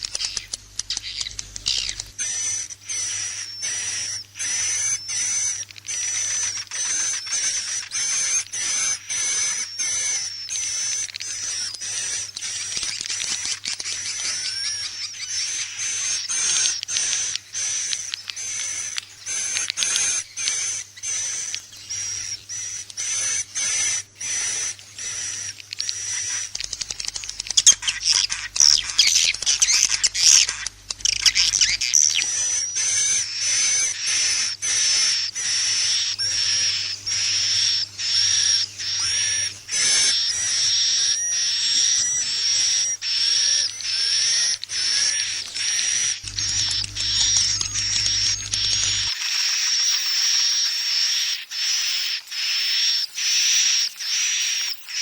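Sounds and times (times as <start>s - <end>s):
rapid high bird chirps: 0.0s - 55.0s.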